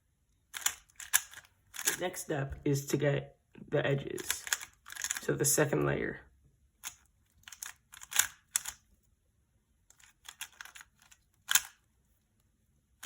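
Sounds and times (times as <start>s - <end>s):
puzzle cube plastic clicks: 0.5s - 2.3s, 4.1s - 5.3s, 6.8s - 8.9s, 9.8s - 11.9s.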